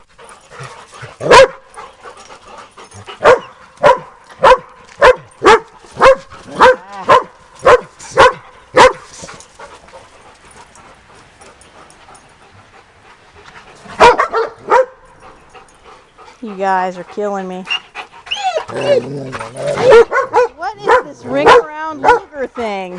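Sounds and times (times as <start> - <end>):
dog barking: 1.2 - 1.6, 3.2 - 9.0, 14.0 - 15.0, 19.8 - 22.3.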